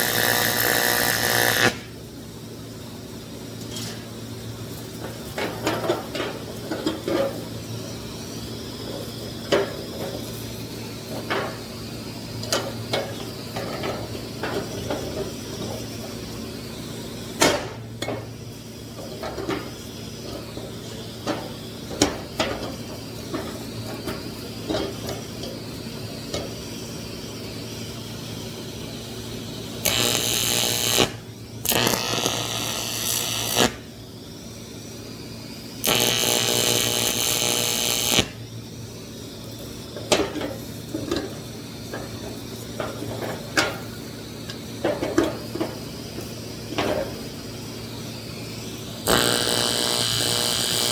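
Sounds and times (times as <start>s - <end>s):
welding arc buzzing: 0.0s - 2.0s, 29.0s - 34.0s, 35.8s - 38.8s, 48.8s - 50.9s.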